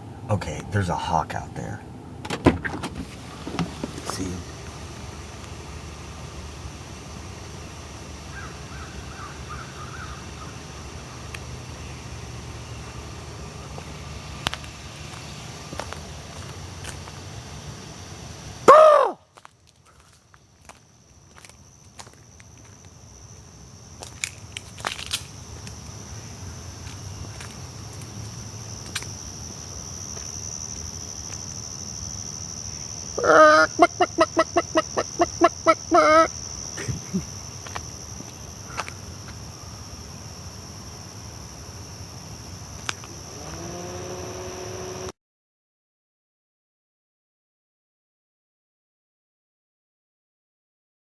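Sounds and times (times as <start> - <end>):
chicken-like clucking squawks: 33.2 - 36.3.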